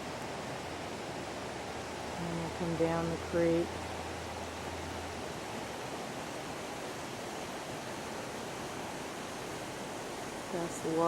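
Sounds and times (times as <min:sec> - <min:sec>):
creek and waterfall rushing: 0:00.0 - 0:11.0.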